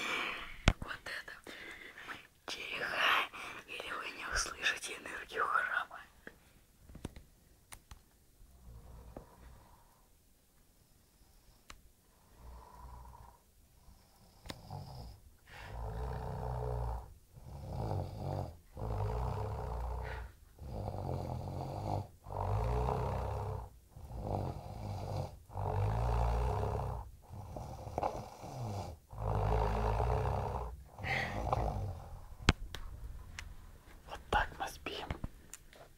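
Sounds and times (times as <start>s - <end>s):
person snoring: 8.6s - 10.0s, 12.1s - 32.3s.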